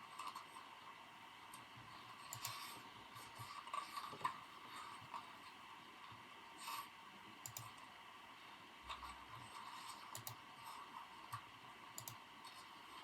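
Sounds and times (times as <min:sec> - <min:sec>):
soft steady background hiss: 0:00.0 - 0:13.0
keyboard keystroke clicks: 0:07.4 - 0:07.7, 0:12.0 - 0:12.2.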